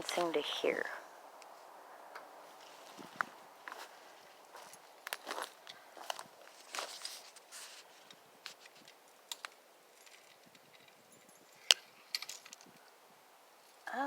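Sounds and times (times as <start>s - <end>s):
footsteps crunching through dry grass: 2.4s - 8.8s.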